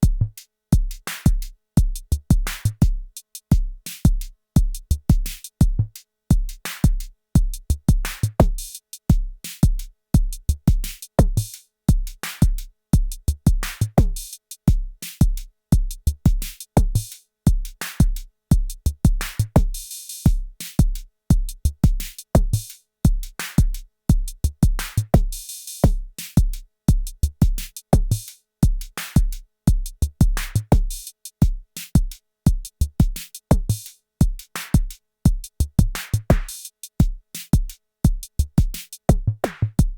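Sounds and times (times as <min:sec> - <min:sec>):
deep kick drum pulse: 0:35.3 - 0:39.9.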